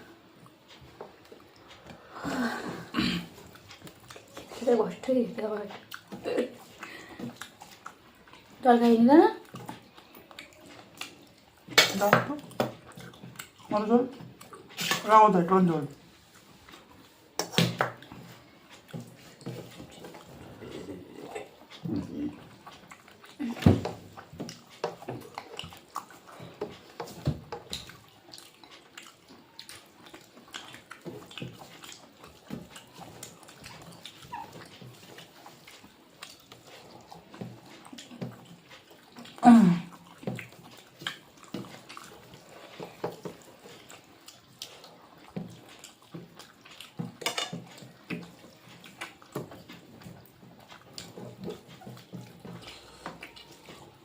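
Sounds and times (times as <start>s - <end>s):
person chewing and lip smacking: 3.2s - 4.6s, 5.6s - 8.6s, 9.4s - 15.1s, 16.2s - 54.0s.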